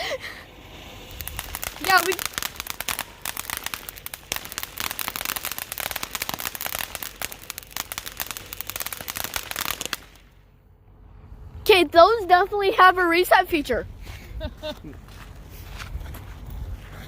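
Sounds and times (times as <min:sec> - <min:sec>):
ground firework crackling: 0:00.0 - 0:10.6.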